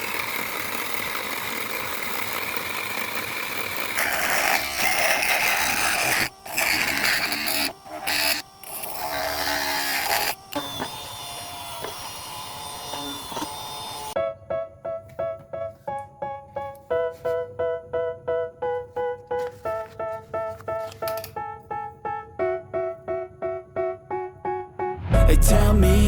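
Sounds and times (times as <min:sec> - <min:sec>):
electric motor whirring: 0:00.0 - 0:14.2.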